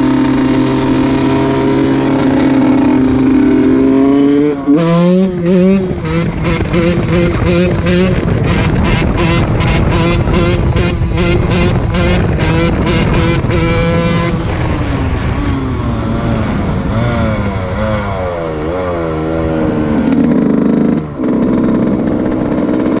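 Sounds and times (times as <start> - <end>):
dirt bike engine revving: 0.0 - 23.0.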